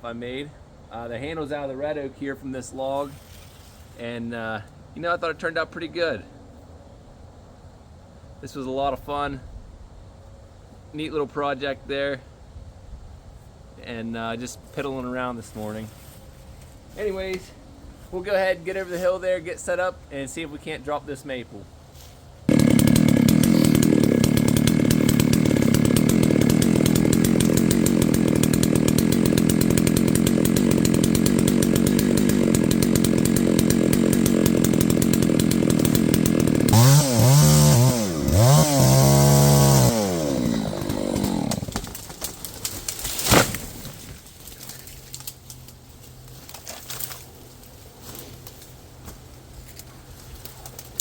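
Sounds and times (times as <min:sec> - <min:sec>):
chainsaw throttle blips: 0:22.5 - 0:42.0
chainsaw cutting wood: 0:22.5 - 0:45.4.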